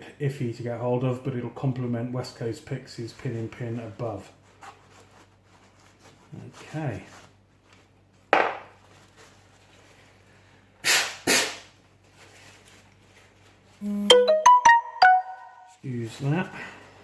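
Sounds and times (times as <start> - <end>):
chiming electronic tune: 13.8 - 15.7.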